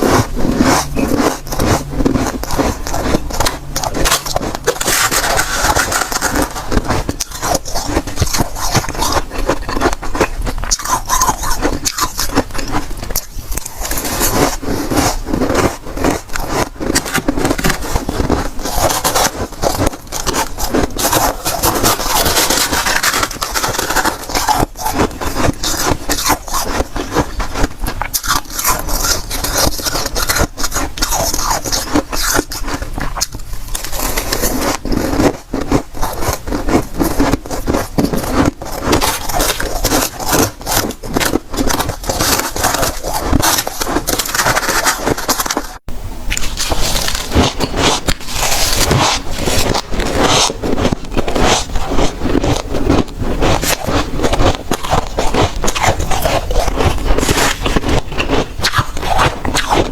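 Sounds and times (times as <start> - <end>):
freezer frost crunching and scraping: 0.0 - 59.9.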